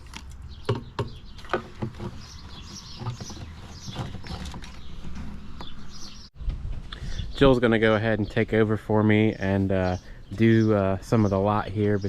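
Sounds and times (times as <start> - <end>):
sharp knocks and rustles: 0.0 - 6.8
birds chirping: 0.0 - 12.0.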